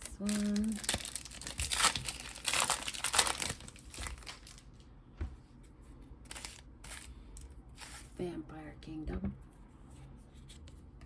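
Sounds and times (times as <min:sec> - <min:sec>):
cards rustling: 0:00.0 - 0:04.8, 0:06.2 - 0:08.1
foil wrapper crinkling: 0:00.0 - 0:04.9, 0:06.3 - 0:07.5.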